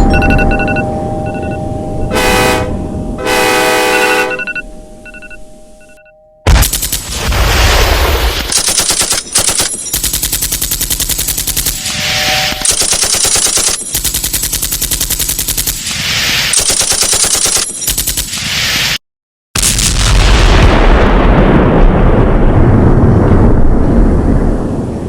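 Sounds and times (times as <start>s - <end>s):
hissing blasts: 6.5s - 9.6s, 15.8s - 16.7s.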